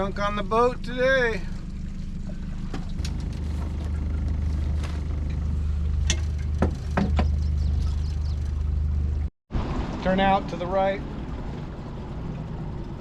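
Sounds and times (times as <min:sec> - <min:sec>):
boat motor humming: 0:00.0 - 0:13.0
knocks and clicks on boat: 0:01.9 - 0:08.8.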